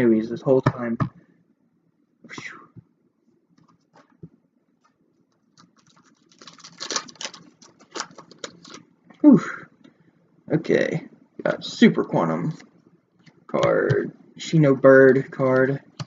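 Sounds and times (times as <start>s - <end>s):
wrapper rustling: 5.5s - 8.8s
foil wrapper crackling: 5.6s - 8.8s.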